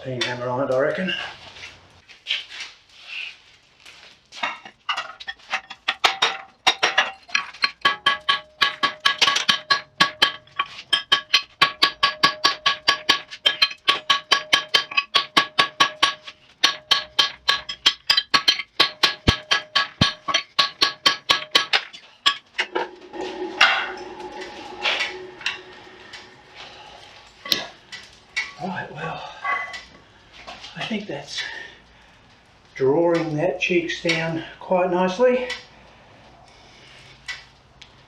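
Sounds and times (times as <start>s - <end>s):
hammer striking hot steel on anvil: 5.7s - 27.8s.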